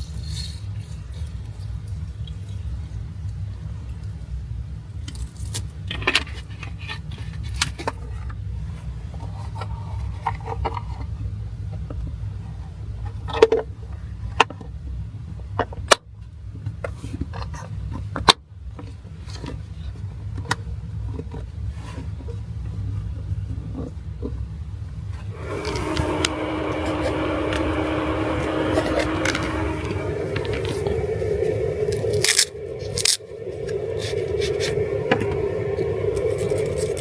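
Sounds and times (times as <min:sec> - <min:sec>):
steady low rumble: 0:25.3 - 0:37.0.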